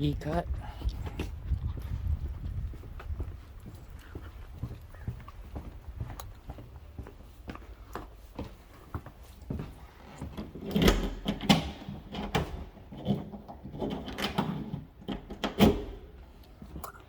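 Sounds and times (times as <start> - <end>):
key clicking in deadbolt lock: 10.7 - 12.6, 13.8 - 16.1.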